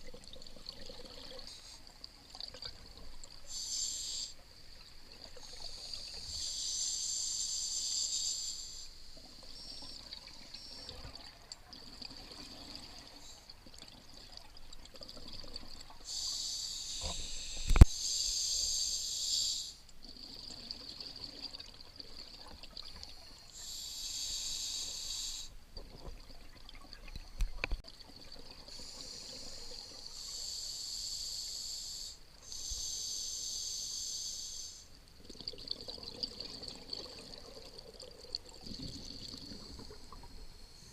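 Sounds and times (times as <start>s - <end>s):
steady hiss: 3.0s - 11.0s, 15.8s - 20.0s, 23.3s - 25.7s, 28.6s - 35.2s, 39.4s - 40.9s
small click: 17.0s - 17.9s.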